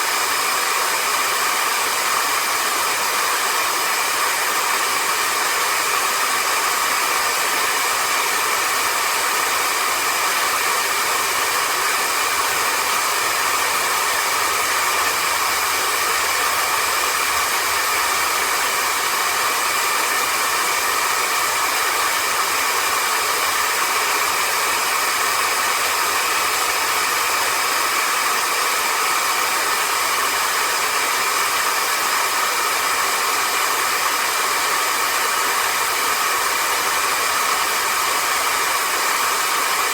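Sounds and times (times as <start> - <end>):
stick vacuum running: 0.0 - 39.9.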